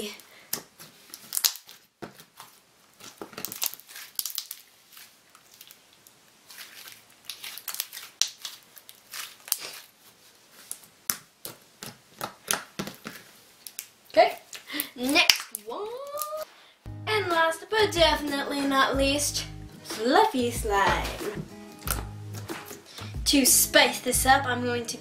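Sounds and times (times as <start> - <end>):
slime squeezed with sticky crackles: 1.0 - 10.0.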